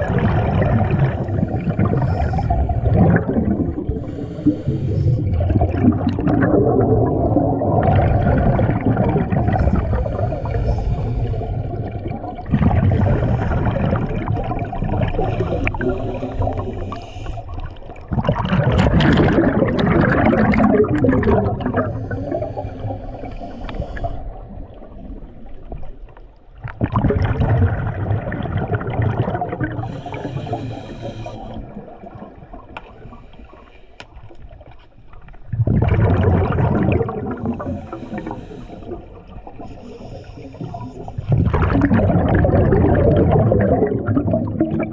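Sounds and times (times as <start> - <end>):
scuba diver breathing through regulator: 1.0 - 5.8, 9.4 - 11.9, 12.9 - 14.1, 15.1 - 18.0, 21.5 - 24.5, 29.8 - 31.8, 37.4 - 41.5.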